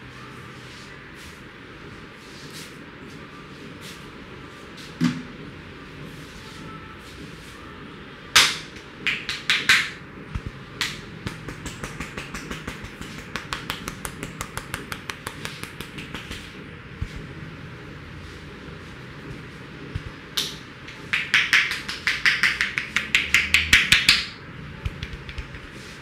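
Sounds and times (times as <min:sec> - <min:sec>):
hands slapping a head: 0:08.4 - 0:10.0, 0:10.8 - 0:16.6, 0:20.4 - 0:24.3, 0:24.9 - 0:25.9
rapid sharp taps on a head: 0:08.4 - 0:16.5, 0:20.4 - 0:25.8.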